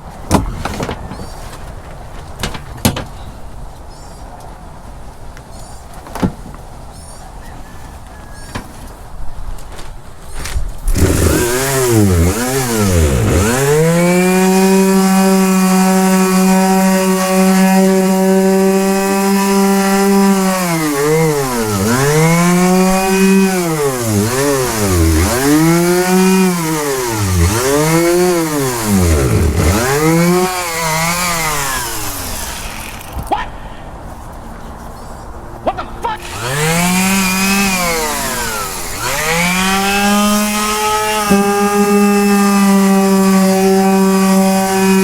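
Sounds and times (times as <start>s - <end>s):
power sander running: 10.8s - 33.3s, 36.2s - 45.0s.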